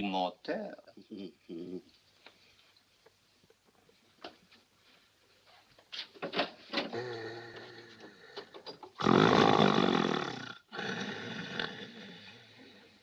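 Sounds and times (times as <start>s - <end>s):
faint breath: 6.9s - 8.7s
man snoring loudly: 9.0s - 12.3s.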